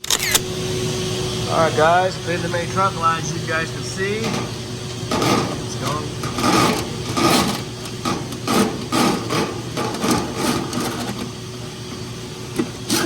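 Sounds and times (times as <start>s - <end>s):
steady machine hum: 0.0s - 13.0s
brush scraping inside metal duct: 3.5s - 13.0s.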